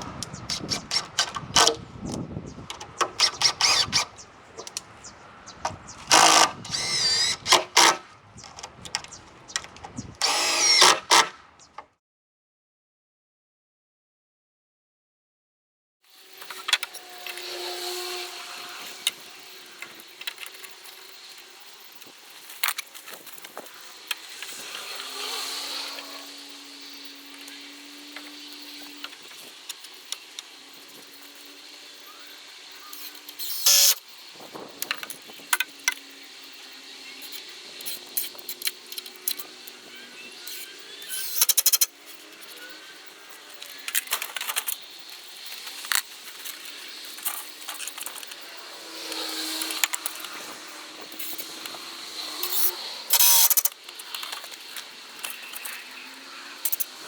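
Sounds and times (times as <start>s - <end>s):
clicks and knocks of tools: 5.6s - 11.9s, 18.8s - 25.0s, 37.2s - 56.0s, 56.6s - 57.0s.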